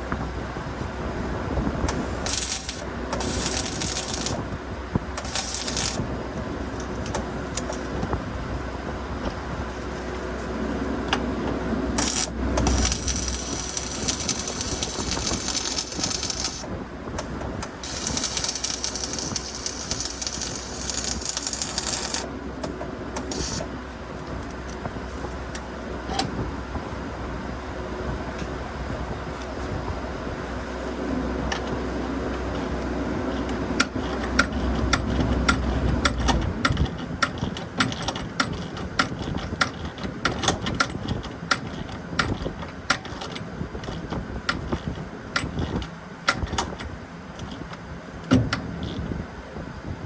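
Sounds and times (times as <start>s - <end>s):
steady low hum: 0.0s - 50.0s
harsh rattly metalwork noise: 1.9s - 4.5s, 5.2s - 6.1s, 11.9s - 16.7s, 17.7s - 22.3s, 23.2s - 23.7s.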